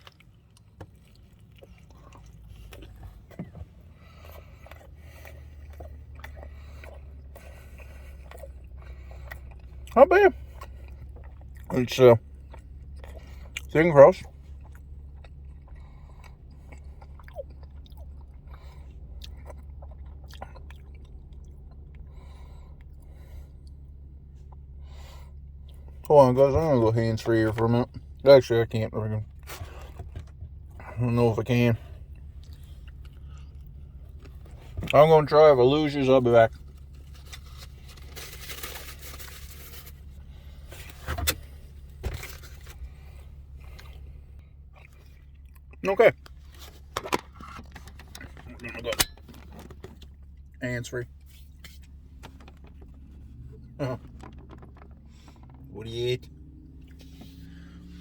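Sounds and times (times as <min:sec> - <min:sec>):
person chewing: 0:00.0 - 0:26.1, 0:31.9 - 0:34.9, 0:42.7 - 0:48.8
steady low hum: 0:00.0 - 0:58.0.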